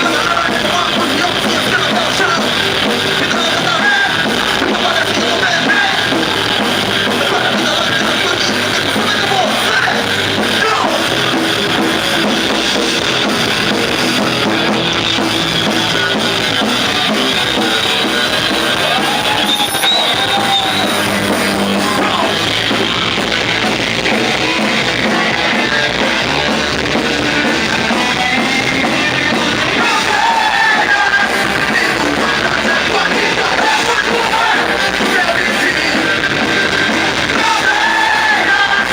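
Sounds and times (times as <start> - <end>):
lead vocal singing: 0.0 - 38.9
rock band playing live: 0.0 - 38.9.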